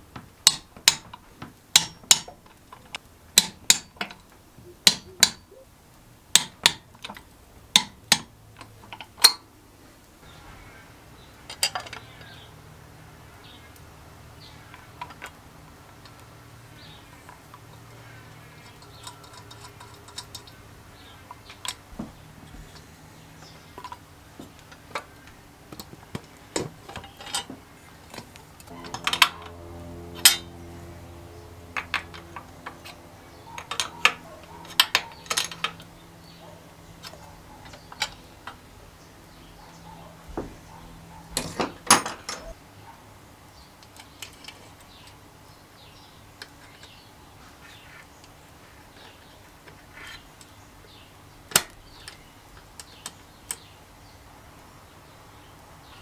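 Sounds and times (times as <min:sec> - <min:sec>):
faint steady hum: 0:00.0 - 0:50.2
metal tools clinking and tapping: 0:18.6 - 0:22.9, 0:25.7 - 0:30.6, 0:31.7 - 0:36.0, 0:40.3 - 0:42.6.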